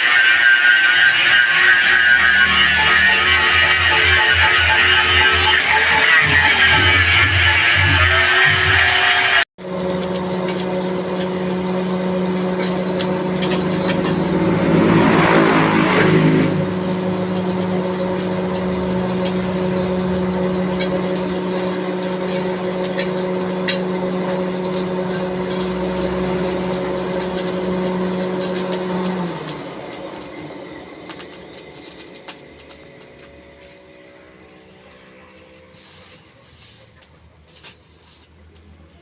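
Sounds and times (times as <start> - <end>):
rough scraping noise: 0.0 - 9.5, 10.1 - 29.8
motor running steadily: 0.0 - 35.6.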